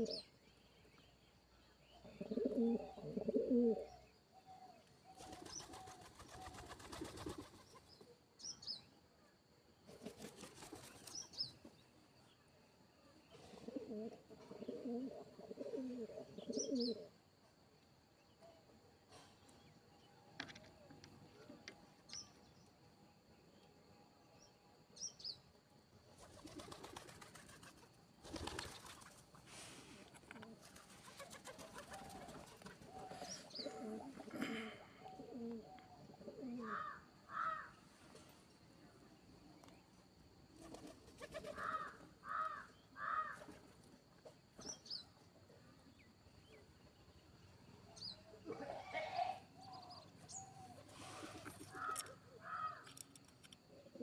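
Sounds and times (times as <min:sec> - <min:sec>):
pigeons cooing: 0:00.0 - 0:00.2, 0:02.0 - 0:04.0, 0:13.4 - 0:17.2, 0:30.3 - 0:37.7, 0:48.4 - 0:53.0, 0:53.7 - 0:54.0
small birds chirping: 0:00.0 - 0:08.9, 0:13.2 - 0:17.1, 0:28.2 - 0:37.7.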